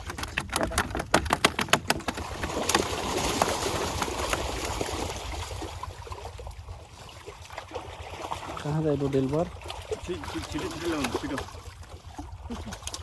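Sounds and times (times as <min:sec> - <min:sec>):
rapid slapping clicks: 0:00.0 - 0:04.5
water splashing: 0:00.0 - 0:13.0.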